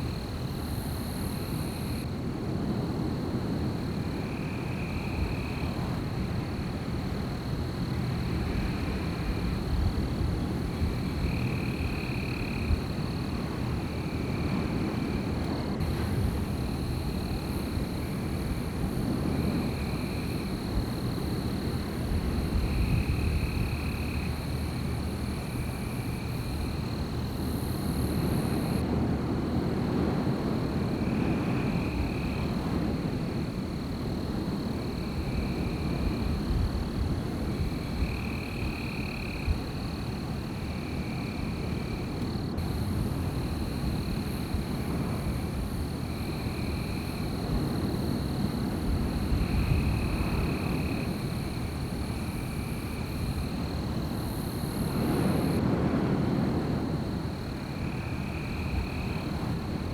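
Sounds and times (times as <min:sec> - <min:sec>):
wind blowing through trees: 0:00.0 - 0:59.9.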